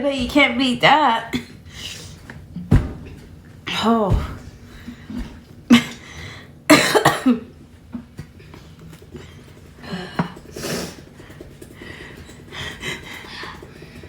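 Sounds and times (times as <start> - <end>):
person coughing: 6.7 - 7.5.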